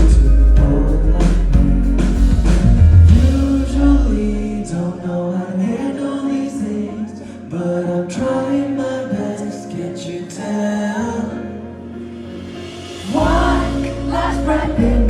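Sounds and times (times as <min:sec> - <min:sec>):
live band music: 0:00.0 - 0:04.9, 0:11.9 - 0:15.0
person singing sustained notes: 0:00.0 - 0:11.3, 0:12.2 - 0:15.0.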